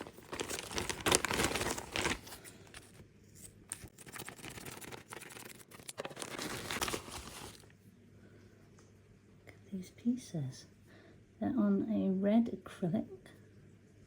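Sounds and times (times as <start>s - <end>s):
packaging rustling and crinkling: 0.0s - 7.7s.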